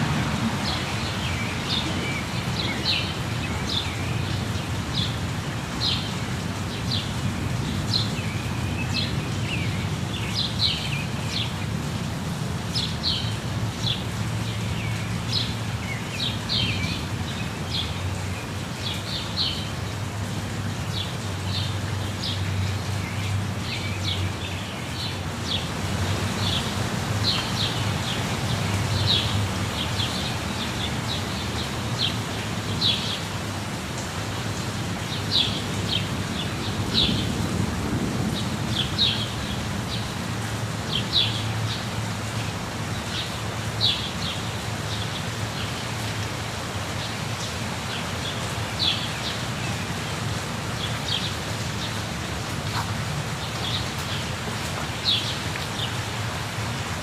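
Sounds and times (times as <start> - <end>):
birds chirping: 0.0 - 11.7, 38.3 - 56.6
waterfall rushing: 0.0 - 57.0.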